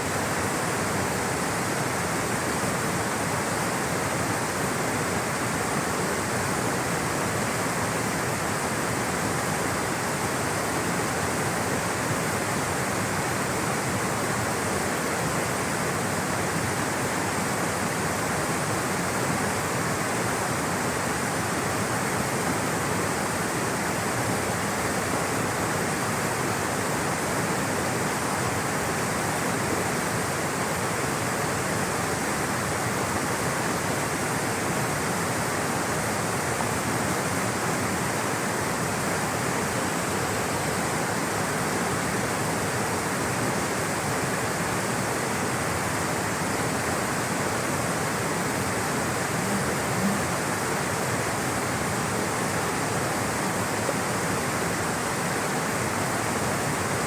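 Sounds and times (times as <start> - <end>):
water rushing: 0.0 - 57.0.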